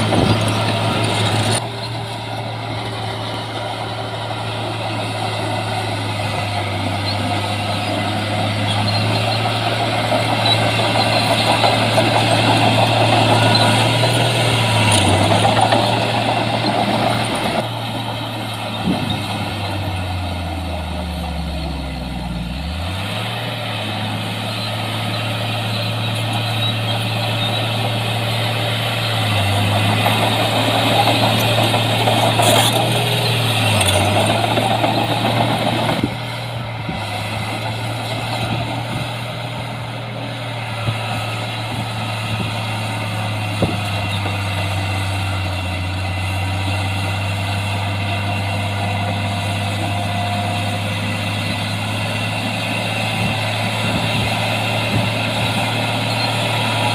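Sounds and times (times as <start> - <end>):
heavy diesel engine running: 0.0 - 56.9.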